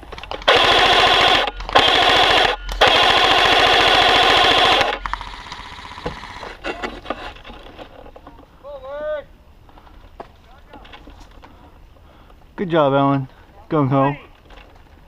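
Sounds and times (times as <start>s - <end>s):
airsoft rifle firing bursts: 0.4s - 6.4s
scattered clicks: 4.8s - 5.7s.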